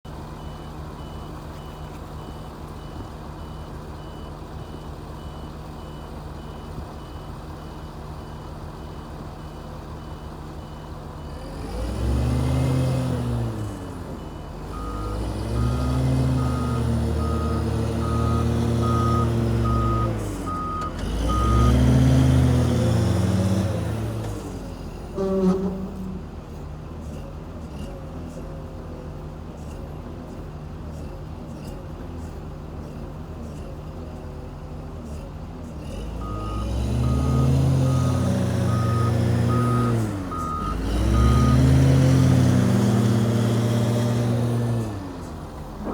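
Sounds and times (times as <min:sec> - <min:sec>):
diesel engine idling and revving: 0:00.1 - 0:45.9
reversing alarm beeping: 0:14.3 - 0:22.3, 0:36.2 - 0:42.4
low-pitched reversing alarm beeps: 0:14.4 - 0:21.8, 0:36.2 - 0:41.8.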